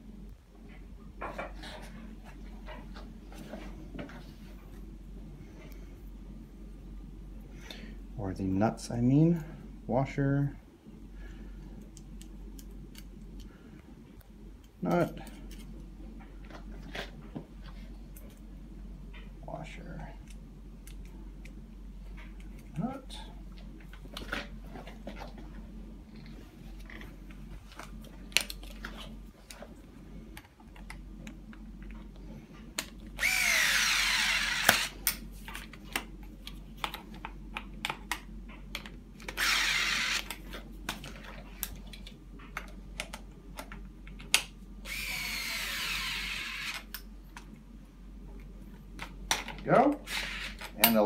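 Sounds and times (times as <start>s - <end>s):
cordless drill running: 33.2s - 35.0s, 39.3s - 40.3s, 44.8s - 46.9s.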